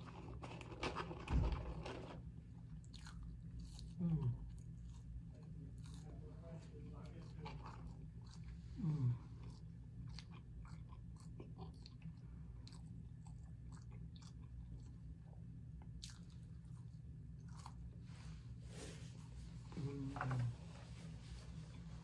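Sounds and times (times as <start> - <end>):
steady low hum: 0.0 - 22.0
person chewing: 2.7 - 18.0.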